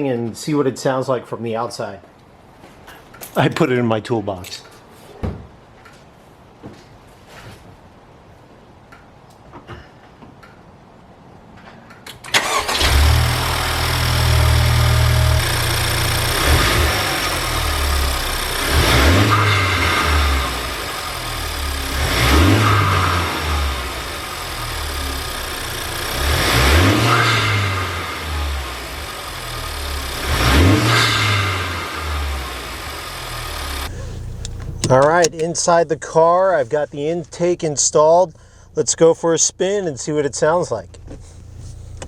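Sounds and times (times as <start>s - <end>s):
car engine starting and revving: 12.2s - 37.5s, 41.0s - 42.0s.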